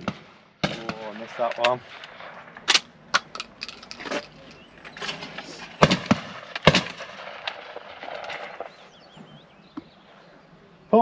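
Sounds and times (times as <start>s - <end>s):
shotgun bangs: 0.0s - 3.5s, 5.1s - 8.8s.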